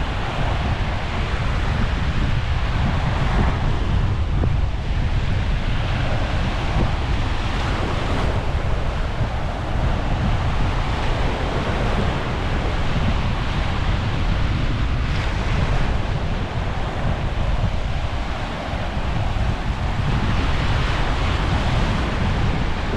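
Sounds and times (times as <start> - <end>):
sea waves washing on shore: 0.0 - 22.9
wind buffeting microphone: 0.0 - 22.9.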